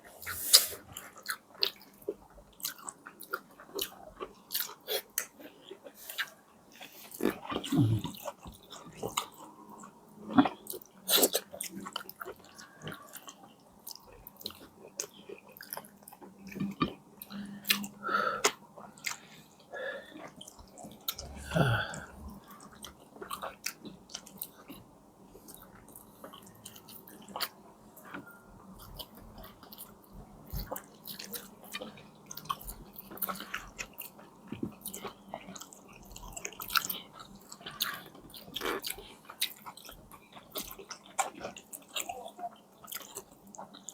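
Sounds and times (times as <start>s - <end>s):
person chewing and biting: 30.5s - 43.9s.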